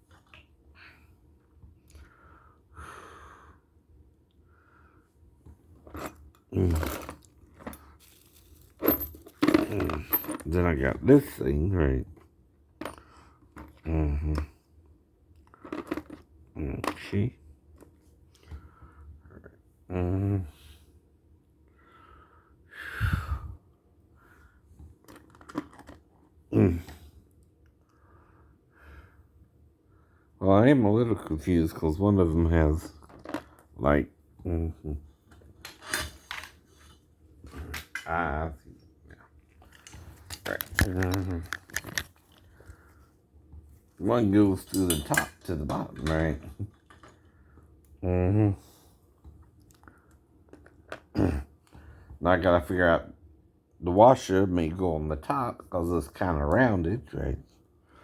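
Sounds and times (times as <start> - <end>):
metal hardware being handled: 5.8 - 10.7, 35.6 - 36.9, 39.6 - 42.5, 44.6 - 47.1
loud breath out: 21.8 - 23.6.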